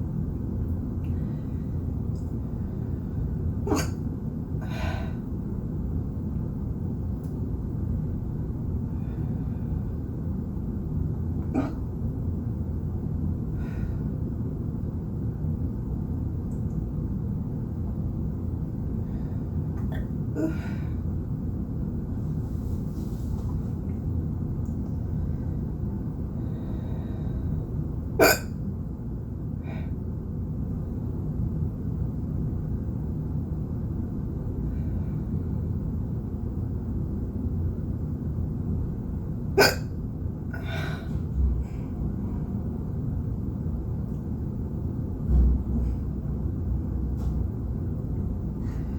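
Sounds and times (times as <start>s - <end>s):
person hiccuping: 3.7s - 4.0s, 28.2s - 28.6s, 39.6s - 39.9s.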